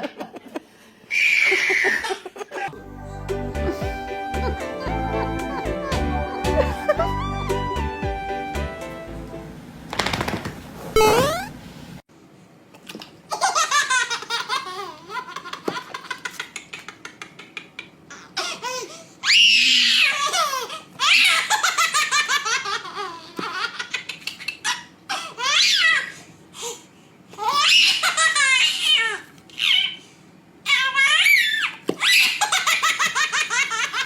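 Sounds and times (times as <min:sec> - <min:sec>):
baby squealing laughs: 0:01.1 - 0:02.7, 0:13.3 - 0:26.2, 0:27.4 - 0:30.0, 0:30.6 - 0:34.0
baby giggling: 0:13.3 - 0:19.0.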